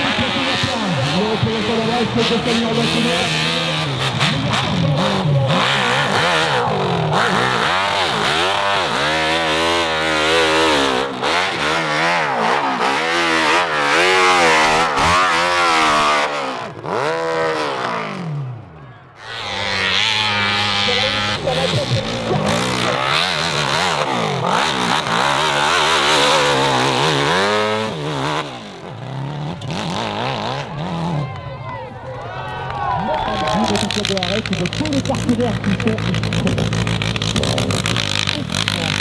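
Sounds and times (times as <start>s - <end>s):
motorcycle engine revving: 0.0s - 31.6s, 32.8s - 39.0s.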